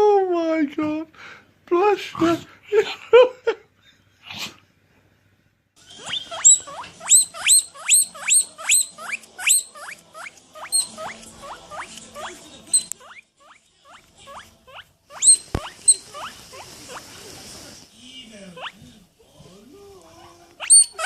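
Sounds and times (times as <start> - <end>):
animal squeaky calls: 5.9 - 17.0, 20.6 - 21.0.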